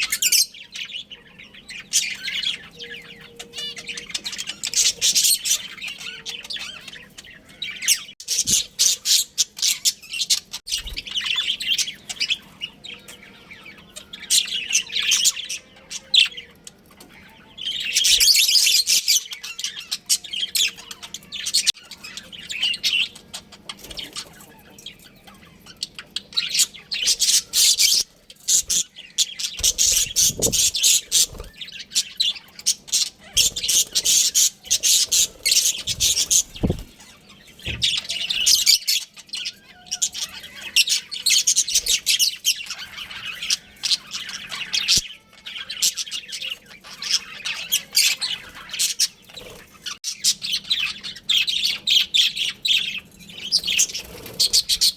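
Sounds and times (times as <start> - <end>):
budgerigars chirping: 0.0 - 54.9.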